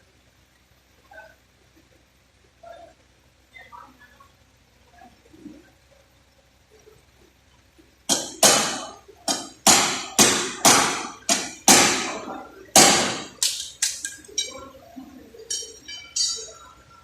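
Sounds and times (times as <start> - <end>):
hammer striking sheet metal: 8.1 - 14.6.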